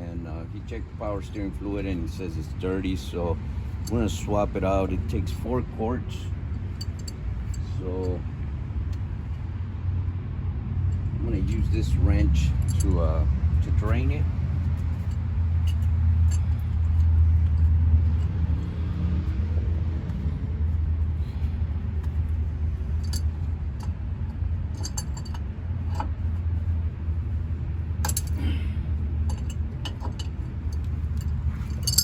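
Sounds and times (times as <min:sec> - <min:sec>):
vehicle engine idling: 0:00.0 - 0:32.0
wrench clinking on metal: 0:03.8 - 0:04.3, 0:06.7 - 0:08.2, 0:11.4 - 0:13.2, 0:13.8 - 0:18.6, 0:23.0 - 0:24.0, 0:24.7 - 0:26.2, 0:28.0 - 0:28.6, 0:29.3 - 0:32.0.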